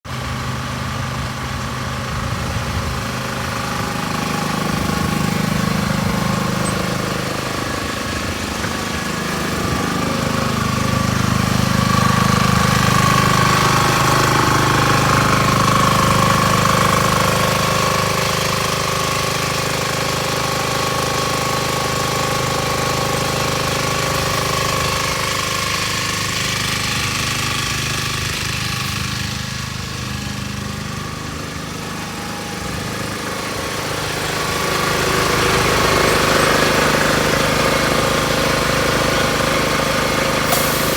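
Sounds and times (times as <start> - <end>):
engine-driven machine running: 0.1 - 40.9.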